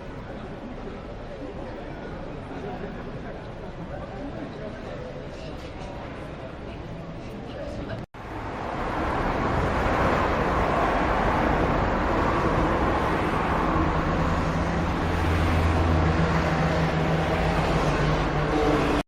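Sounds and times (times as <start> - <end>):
passing vehicle noise: 8.2 - 19.0.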